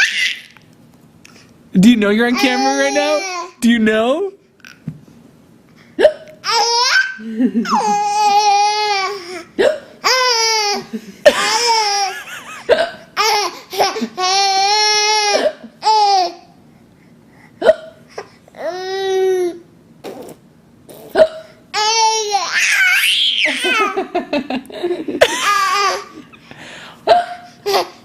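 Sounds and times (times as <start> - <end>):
baby laughing: 6.4 - 9.4, 10.0 - 16.4, 21.8 - 24.1, 25.2 - 26.4, 27.6 - 28.0.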